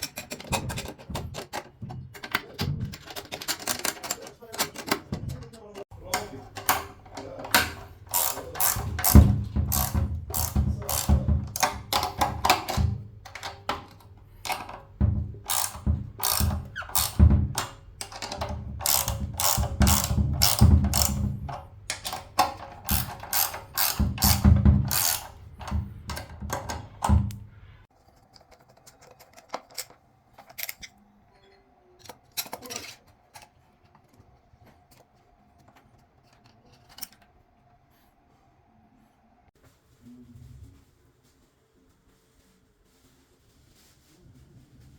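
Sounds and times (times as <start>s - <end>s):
hand tool clicks and knocks: 6.1s - 27.4s.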